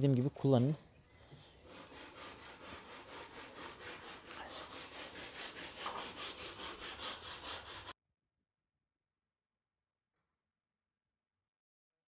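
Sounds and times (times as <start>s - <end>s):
rhythmic scraping strokes: 1.6s - 8.0s.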